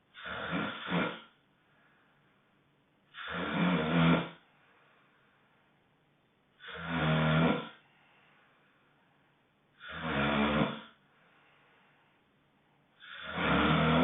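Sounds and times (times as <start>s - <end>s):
quiet breathing: 0.0s - 3.5s, 4.2s - 14.0s
loud rasping snores: 0.2s - 1.4s, 3.1s - 4.5s, 6.6s - 7.8s, 9.8s - 11.0s, 13.0s - 14.0s.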